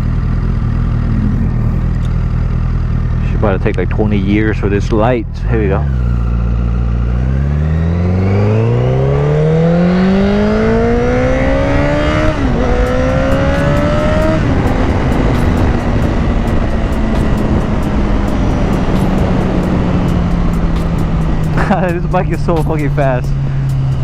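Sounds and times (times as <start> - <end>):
motorcycle engine revving: 0.0 - 24.0
wind rush: 10.1 - 24.0.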